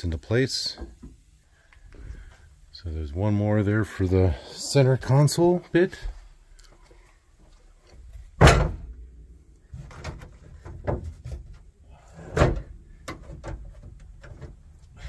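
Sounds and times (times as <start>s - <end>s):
rubber mats thudding on metal floor: 8.4s - 9.1s, 9.8s - 14.6s.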